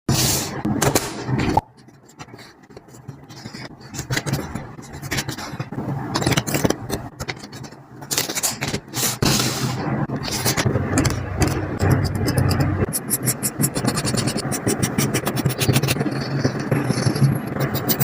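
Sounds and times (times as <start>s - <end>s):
objects scraping and rustling: 0.1s - 12.9s.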